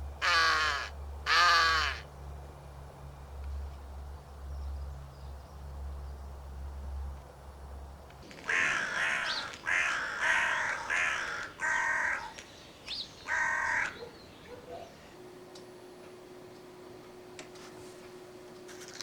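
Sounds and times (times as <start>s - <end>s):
crow call caws: 0.2s - 2.1s, 8.3s - 15.0s.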